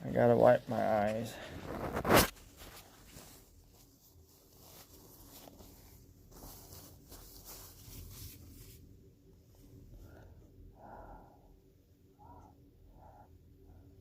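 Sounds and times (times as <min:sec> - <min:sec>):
tissue rustling: 0:00.2 - 0:10.2.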